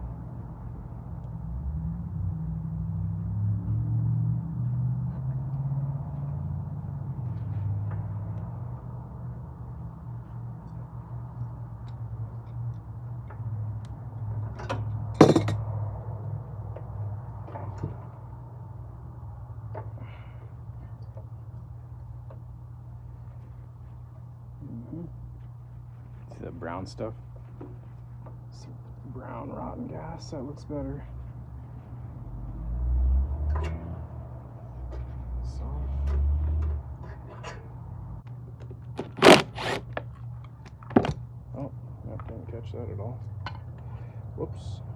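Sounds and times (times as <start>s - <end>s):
hand tools clicking and knocking: 15.2s - 15.6s, 39.0s - 40.0s
sharp metal clank: 15.2s - 15.6s.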